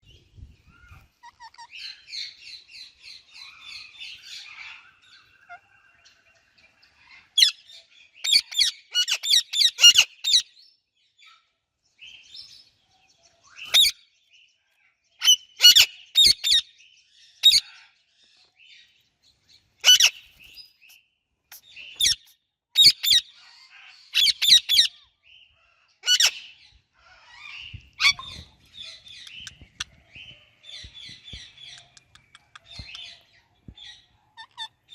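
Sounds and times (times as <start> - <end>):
loud sharp parakeet calls: 0.7 - 6.1, 7.0 - 10.4, 15.2 - 16.6, 19.8 - 20.5, 21.5 - 34.9
parakeets chirping: 0.8 - 6.1, 19.8 - 20.9, 21.5 - 25.0, 26.0 - 34.9.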